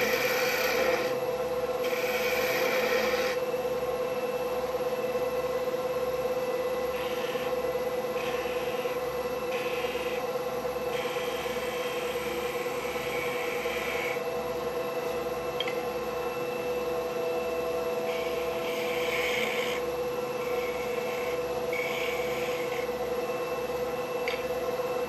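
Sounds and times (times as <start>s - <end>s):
hiss of tool cutting wood: 0.0s - 1.2s, 1.8s - 3.4s, 6.9s - 10.3s, 10.9s - 14.3s, 18.1s - 23.0s
wood lathe humming: 0.0s - 4.0s, 4.6s - 25.0s.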